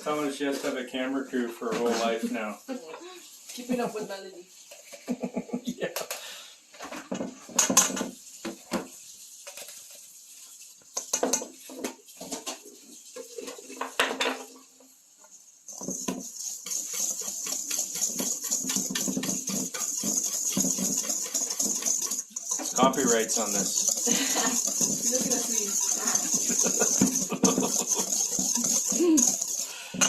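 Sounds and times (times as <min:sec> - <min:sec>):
utensil scraping in bowl: 0:07.6 - 0:14.0, 0:15.7 - 0:30.0
utensils and dishes clattering: 0:15.7 - 0:30.0.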